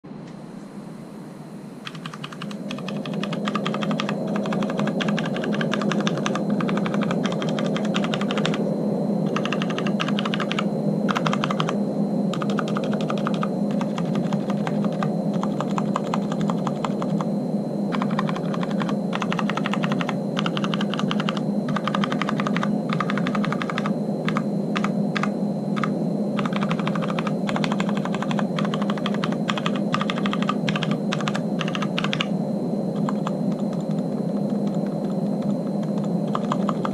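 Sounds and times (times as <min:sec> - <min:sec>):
mechanical keyboard keystroke clacks: 0:01.9 - 0:08.6, 0:09.3 - 0:11.8, 0:12.4 - 0:17.3, 0:18.0 - 0:32.3, 0:35.8 - 0:36.9.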